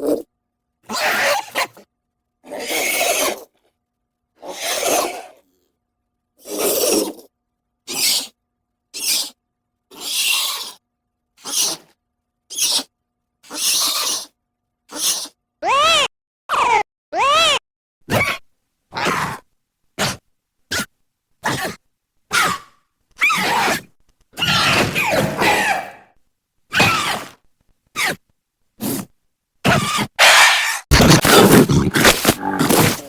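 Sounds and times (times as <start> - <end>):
breathy raspy creature hisses: 4.4 - 5.4, 13.5 - 14.3
creature call rising and falling: 15.0 - 17.6, 30.0 - 33.0.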